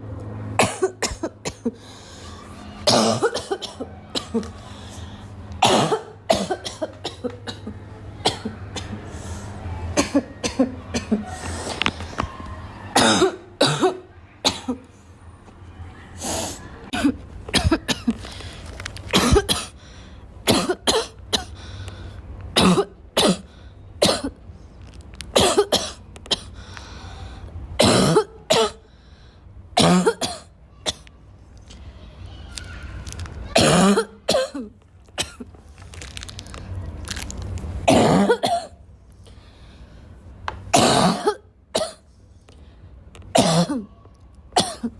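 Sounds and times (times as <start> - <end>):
girl coughing: 0.6 - 1.8, 2.8 - 4.8, 5.6 - 8.9, 10.0 - 11.4, 13.0 - 14.8, 16.9 - 18.2, 19.1 - 19.8, 20.5 - 21.6, 22.6 - 24.3, 25.4 - 26.5, 27.8 - 28.8, 29.8 - 31.0, 33.5 - 35.5, 37.9 - 38.8, 40.7 - 42.0, 43.3 - 43.9, 44.6 - 44.9.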